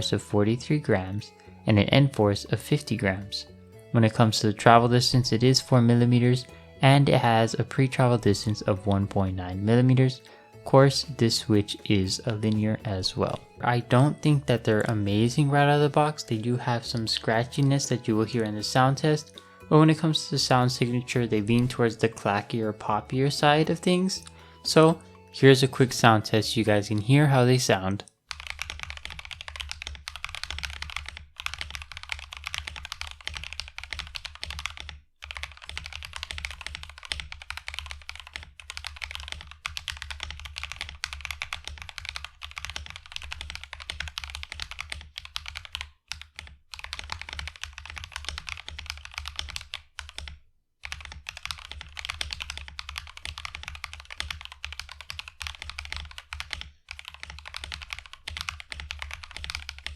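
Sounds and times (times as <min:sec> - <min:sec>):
mechanical keyboard typing: 0:28.3 - 0:59.9.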